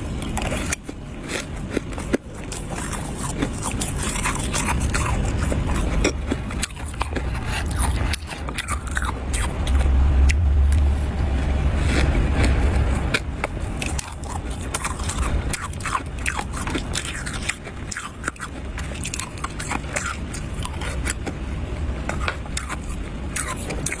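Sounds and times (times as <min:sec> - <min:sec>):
low rumble: 0:00.0 - 0:24.0
spoon scraping frost: 0:00.5 - 0:09.9.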